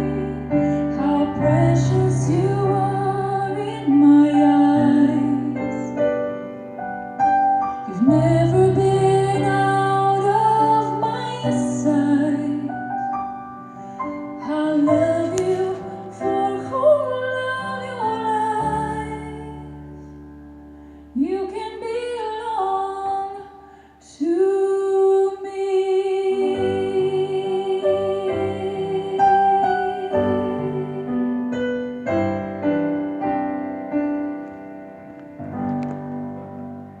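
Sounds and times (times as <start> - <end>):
piano chords: 0.0 - 37.0.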